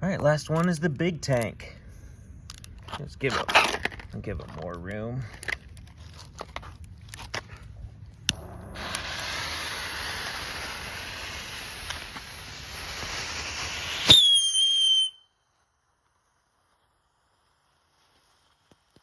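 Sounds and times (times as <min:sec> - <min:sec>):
firework hissing: 0:08.2 - 0:19.0
firework bang: 0:08.4 - 0:14.7
high whistle: 0:13.4 - 0:15.5.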